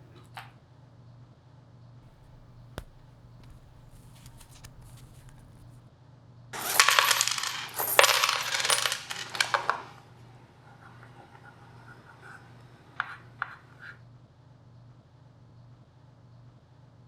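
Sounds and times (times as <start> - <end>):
metallic jingling and clinking: 2.1 - 5.8, 6.6 - 9.7.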